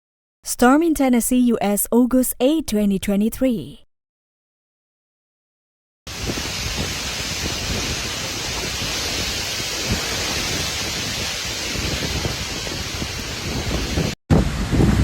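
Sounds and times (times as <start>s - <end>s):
heavy rain: 6.1s - 15.0s
strong wind buffeting microphone: 6.1s - 15.0s.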